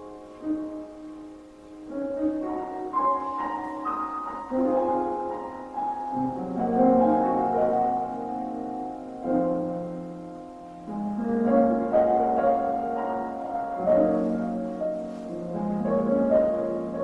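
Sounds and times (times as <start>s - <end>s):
piano playing slow chords: 0.0s - 17.0s.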